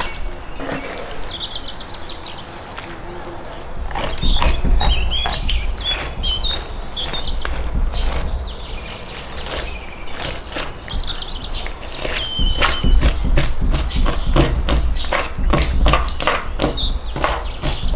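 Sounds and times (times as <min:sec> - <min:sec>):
small birds chirping: 0:00.0 - 0:17.9
sharp clicks and knocks: 0:03.8 - 0:17.9
steady low rumble: 0:03.8 - 0:17.9.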